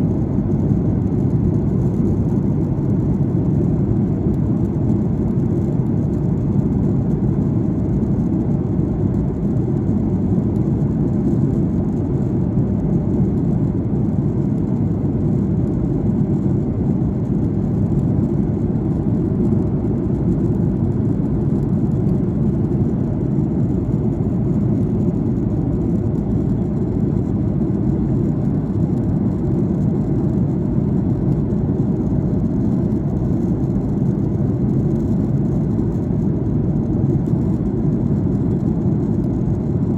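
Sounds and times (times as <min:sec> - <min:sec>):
airliner engines rumbling: 0:00.0 - 0:39.9.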